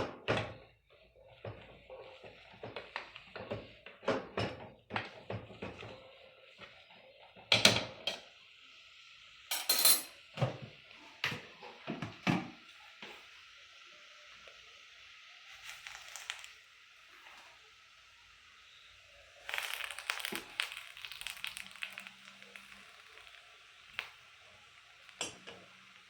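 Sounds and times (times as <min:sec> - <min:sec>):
utensils knocking against pot: 0:01.4 - 0:06.0, 0:07.5 - 0:08.2, 0:09.5 - 0:10.7, 0:25.2 - 0:25.7
faint steady hiss: 0:05.2 - 0:26.0.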